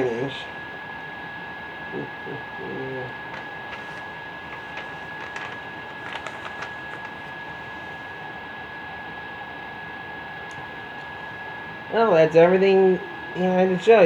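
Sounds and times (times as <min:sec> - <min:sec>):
faint clicks and rustles: 0:03.1 - 0:08.2.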